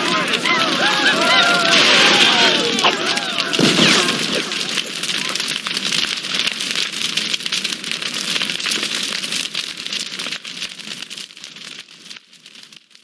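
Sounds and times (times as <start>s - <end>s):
dense crackling patter: 0.0s - 13.0s.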